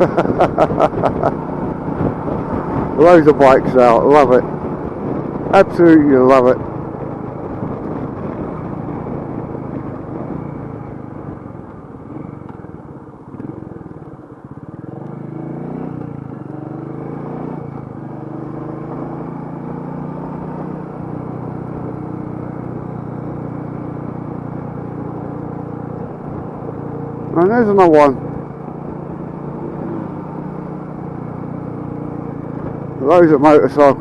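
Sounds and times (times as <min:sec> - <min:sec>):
wind noise on microphone: 0:00.0 - 0:13.9, 0:24.4 - 0:26.9
motorcycle engine running: 0:00.0 - 0:34.0.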